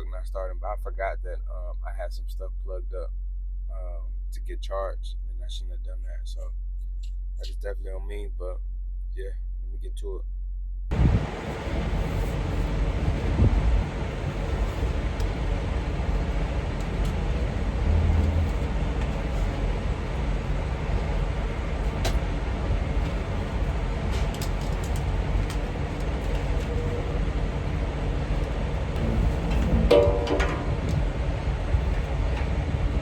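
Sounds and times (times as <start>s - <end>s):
engine idling rumble: 10.9s - 33.0s.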